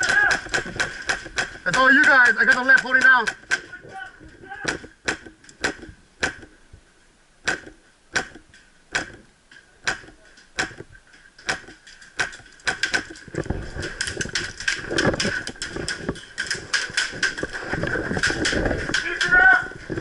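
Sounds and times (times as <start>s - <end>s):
airsoft rifle shots: 0.0s - 3.8s, 4.6s - 6.5s, 7.4s - 9.2s, 9.8s - 10.8s, 11.4s - 13.2s
rustling: 0.0s - 20.0s.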